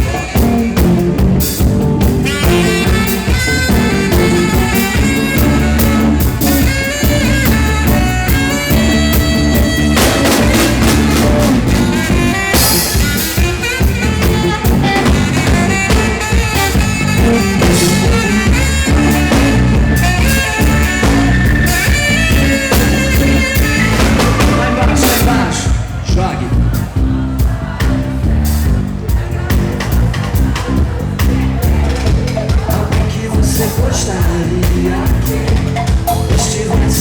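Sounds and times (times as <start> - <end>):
melodic lead line: 0.0 - 26.0
drum kit beat: 0.0 - 37.0.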